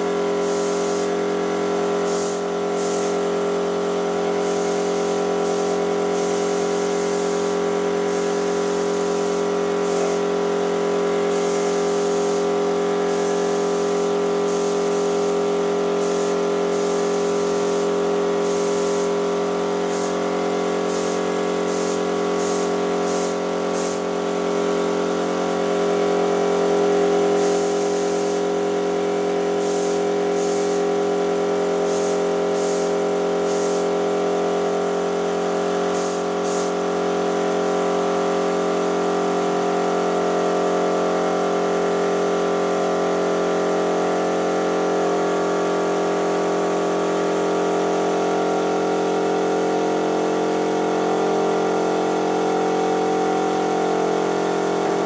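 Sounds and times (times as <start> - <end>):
machine motor running: 0.0 - 55.0
short hiss bursts: 0.4 - 1.2, 2.0 - 3.2, 4.4 - 10.3, 11.3 - 15.4, 16.0 - 19.2, 19.8 - 20.2, 20.8 - 24.1, 27.4 - 28.5, 29.6 - 30.9, 31.8 - 33.9, 35.9 - 36.8.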